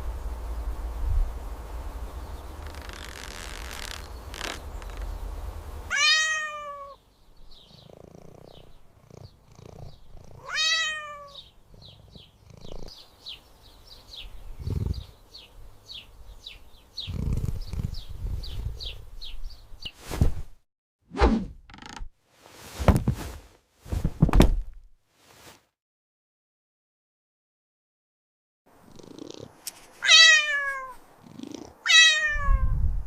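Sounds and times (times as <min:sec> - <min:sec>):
cat meowing: 0:05.9 - 0:07.0, 0:10.4 - 0:11.5, 0:30.0 - 0:32.8.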